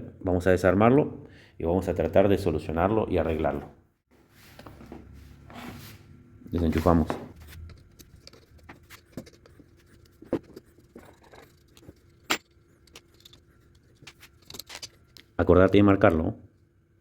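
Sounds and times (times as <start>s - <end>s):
fan parts clicking and rattling: 7.6s - 15.3s.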